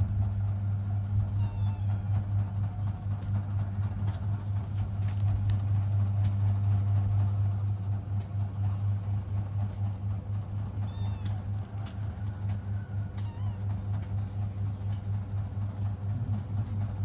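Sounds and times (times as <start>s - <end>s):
low hum: 0.0s - 17.0s.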